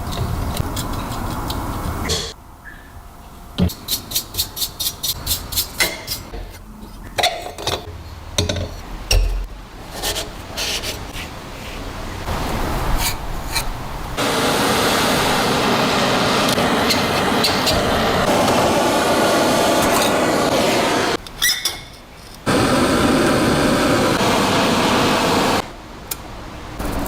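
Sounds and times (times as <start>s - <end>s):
filing on rusted metal: 3.7s - 6.4s, 13.0s - 13.8s
steady noisy rush: 13.8s - 21.2s, 22.5s - 25.8s.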